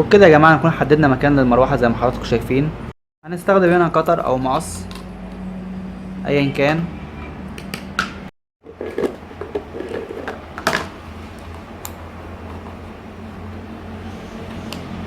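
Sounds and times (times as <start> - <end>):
steady low hum: 9.8 - 15.0.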